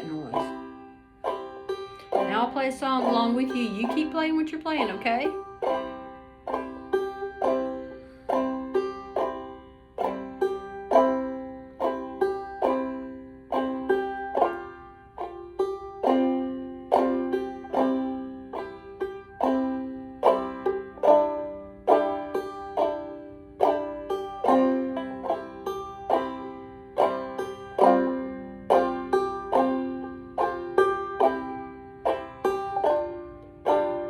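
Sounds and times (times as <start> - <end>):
banjo strumming: 0.0 - 34.0.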